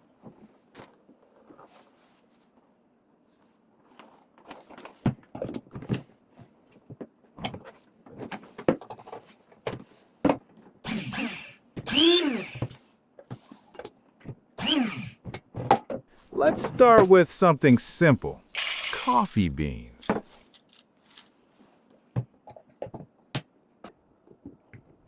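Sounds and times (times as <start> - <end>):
hard objects clicking and knocking: 20.1 - 21.3.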